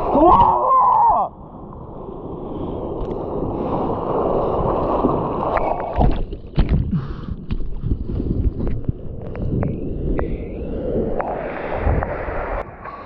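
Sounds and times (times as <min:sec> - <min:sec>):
choppy splashing water: 0:00.0 - 0:10.3
wave rushing in: 0:09.6 - 0:13.0.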